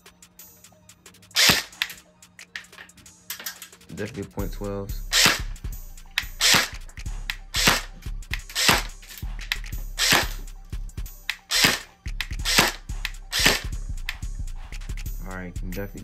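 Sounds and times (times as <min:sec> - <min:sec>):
airsoft gun firing single shots: 0:01.4 - 0:02.0, 0:05.1 - 0:05.5, 0:06.2 - 0:06.8, 0:07.6 - 0:10.4, 0:11.3 - 0:13.7.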